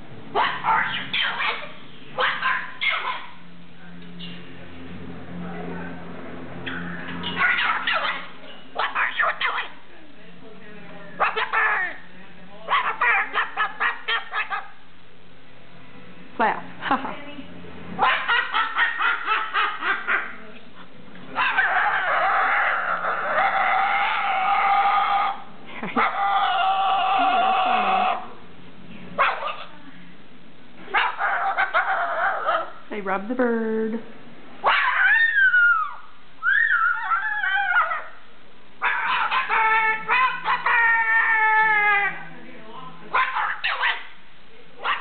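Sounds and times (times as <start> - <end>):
cockatoo harsh call: 0.4 - 3.4, 6.6 - 9.8, 11.2 - 12.1, 12.7 - 14.8, 18.0 - 20.4, 21.4 - 28.4, 30.9 - 32.9, 34.6 - 42.3
cockatoo laughing: 18.0 - 20.4, 21.8 - 28.3.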